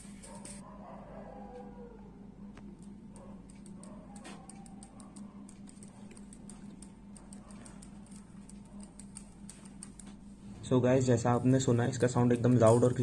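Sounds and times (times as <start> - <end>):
tinny electronic music: 11.3 - 13.0.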